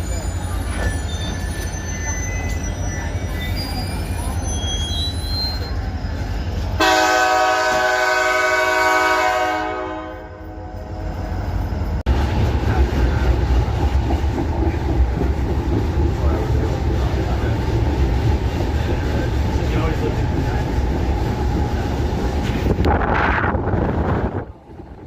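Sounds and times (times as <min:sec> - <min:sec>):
train rumbling: 0:00.0 - 0:25.0
locomotive air horn: 0:06.8 - 0:10.6.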